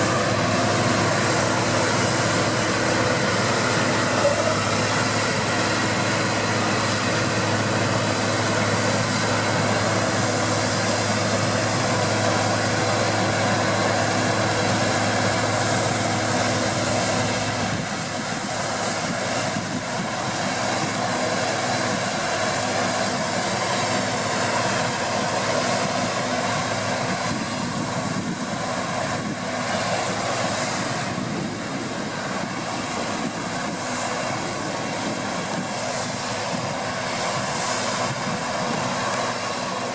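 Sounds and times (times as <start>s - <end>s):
combine harvester engine drone: 0.0s - 39.9s.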